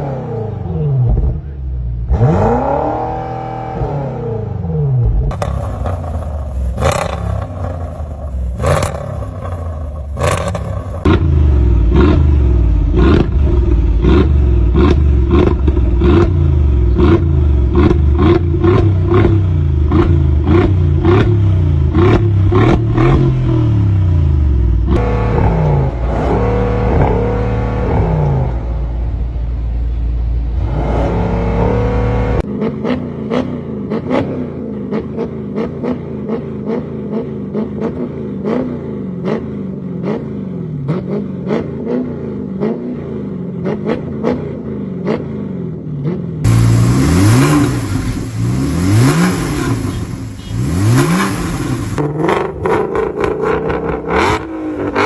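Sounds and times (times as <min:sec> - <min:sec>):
car exhaust revving: 0:00.0 - 0:45.4, 0:46.0 - 0:55.0
exhaust cracks: 0:05.3 - 0:11.3, 0:24.9 - 0:30.2, 0:46.5 - 0:55.0.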